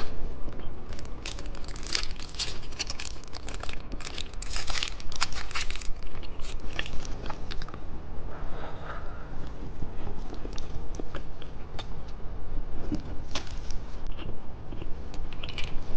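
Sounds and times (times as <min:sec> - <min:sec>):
plastic wrapper crinkling: 0:00.8 - 0:07.6.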